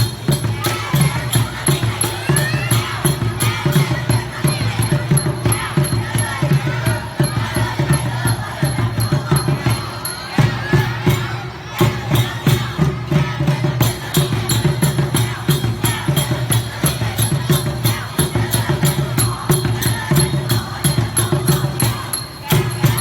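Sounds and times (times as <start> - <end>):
heavy low drum beats: 0.0 - 23.0
percussion music: 0.0 - 23.0.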